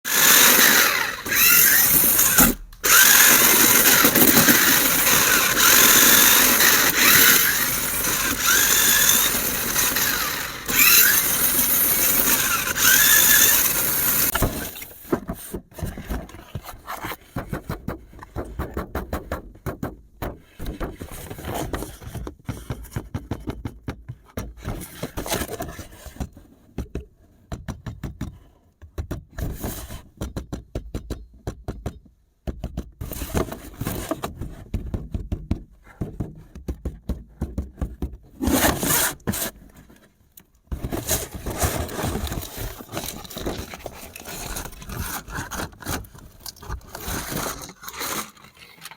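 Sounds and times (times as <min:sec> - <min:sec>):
toy motor whirring: 0:00.1 - 0:15.1, 0:40.9 - 0:48.9.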